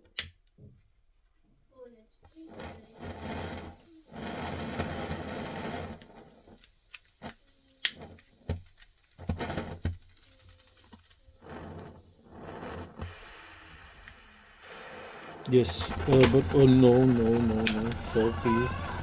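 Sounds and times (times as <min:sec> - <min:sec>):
gas soldering iron hissing: 0:02.3 - 0:19.0
sharp clicks: 0:15.0 - 0:19.0.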